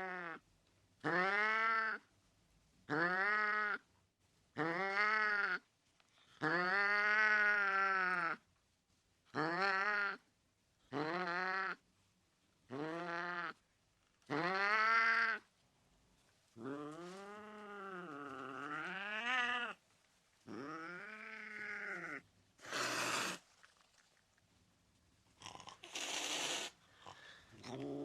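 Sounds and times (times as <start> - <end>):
cat hissing: 20.5 - 23.6, 25.5 - 28.0.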